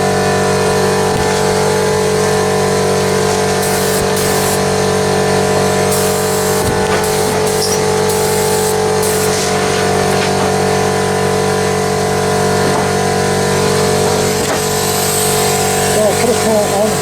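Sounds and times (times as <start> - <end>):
air compressor humming: 0.0 - 17.0
high hiss bursts: 3.5 - 4.8, 5.9 - 9.6.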